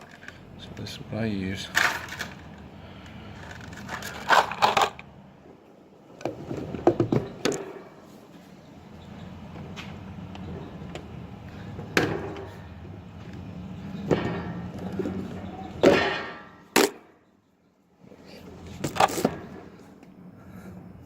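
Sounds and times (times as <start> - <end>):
clicks and knocks of tools: 0.0 - 0.4
steady low hum: 0.0 - 21.0.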